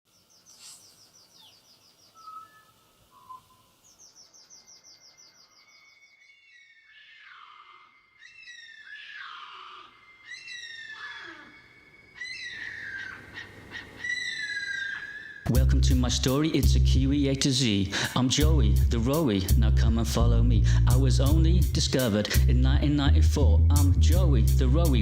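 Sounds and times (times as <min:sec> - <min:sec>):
bird high trills: 0:00.2 - 0:15.5
bird whistled calls: 0:00.4 - 0:15.5.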